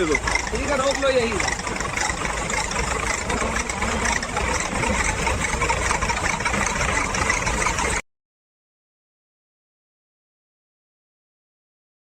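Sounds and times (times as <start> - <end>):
vehicle engine idling: 0.0 - 8.0.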